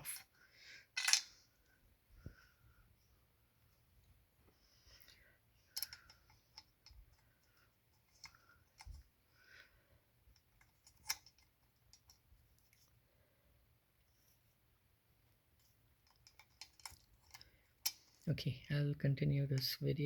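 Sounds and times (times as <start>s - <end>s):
metal clicks of screws: 5.7s - 7.0s.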